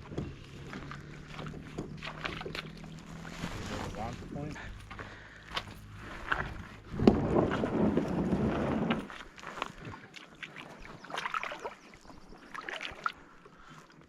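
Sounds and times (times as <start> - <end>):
loud rough scraping rush: 0.4 - 9.2.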